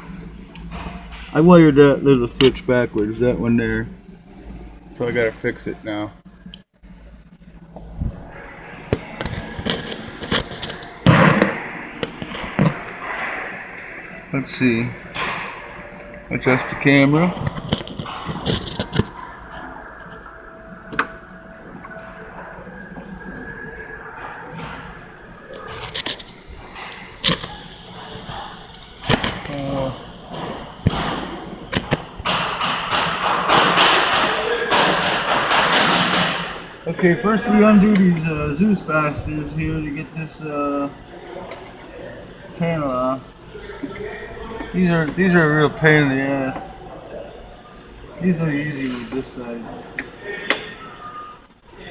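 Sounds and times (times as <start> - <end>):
rustling and scraping: 7.4 - 13.6, 16.6 - 20.3
objects clattering and scraping: 7.6 - 14.1, 16.4 - 20.4, 22.8 - 36.6.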